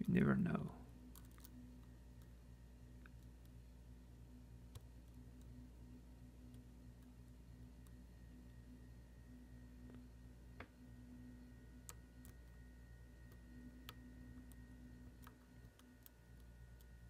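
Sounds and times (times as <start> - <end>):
faint steady hum: 0.0 - 17.0.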